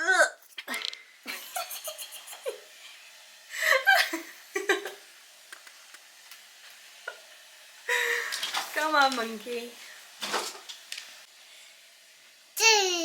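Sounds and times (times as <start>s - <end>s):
child giggling: 1.3s - 2.6s, 3.6s - 5.0s.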